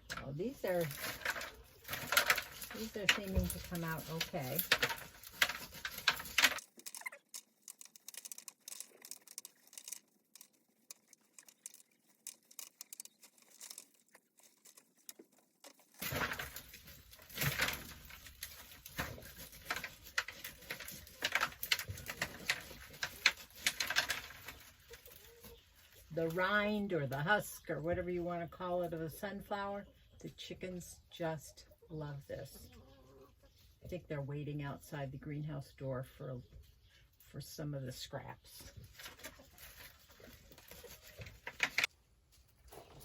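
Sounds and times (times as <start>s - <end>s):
sunflower seeds crackling and pattering: 0.0s - 27.7s, 38.4s - 41.9s.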